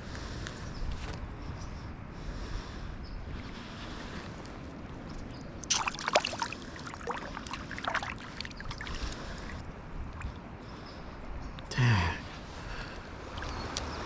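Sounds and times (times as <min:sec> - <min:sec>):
river water running: 0:04.0 - 0:11.2, 0:11.9 - 0:14.0
sharp clicks and splashy crackles: 0:05.6 - 0:10.4, 0:13.3 - 0:14.0.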